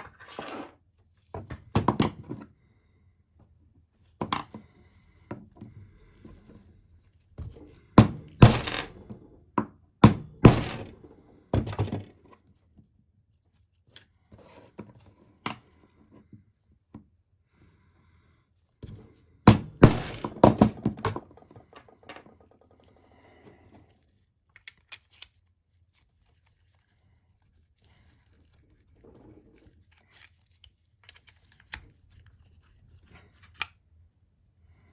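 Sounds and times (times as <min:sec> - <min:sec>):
hard knocks on metal parts: 0:08.0 - 0:09.0, 0:10.0 - 0:11.0, 0:19.5 - 0:21.2.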